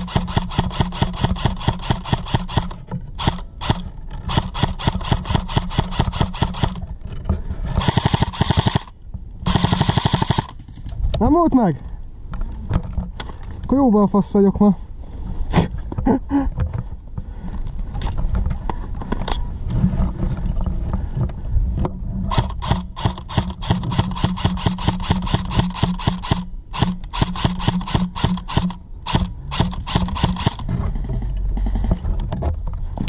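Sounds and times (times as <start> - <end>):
airsoft gun firing rapid shots: 0.0 - 6.8, 7.8 - 10.7, 22.3 - 32.0
steady low hum: 0.0 - 33.0.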